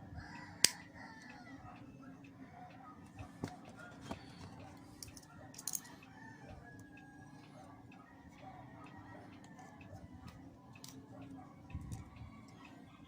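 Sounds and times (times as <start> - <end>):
faint rooster crowing: 0.0 - 13.0
small parts clicking: 4.9 - 6.1, 10.2 - 11.1.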